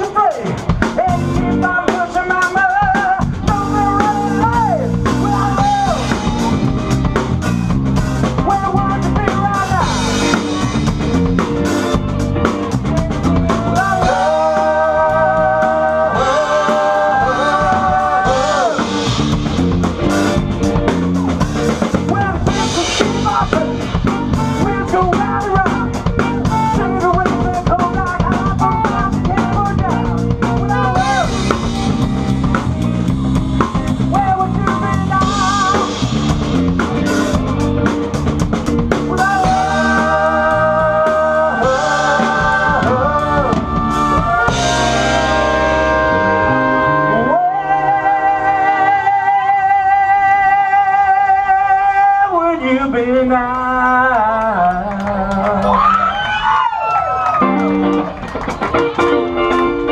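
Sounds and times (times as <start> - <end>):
drum kit steady beat: 0.0 - 46.8
live band playing: 0.0 - 59.9
pitch-bending melodic lead line: 0.7 - 49.0.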